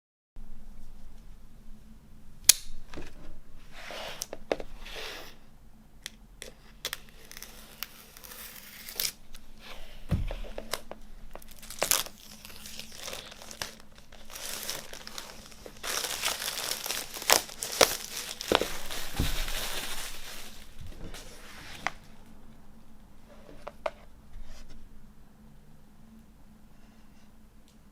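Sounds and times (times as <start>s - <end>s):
packaging crinkling and tearing: 6.8s - 9.2s, 10.4s - 22.0s.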